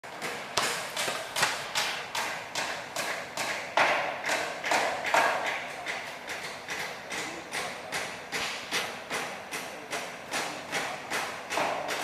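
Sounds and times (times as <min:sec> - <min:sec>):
rhythmic sharp knocks: 0:00.1 - 0:12.0.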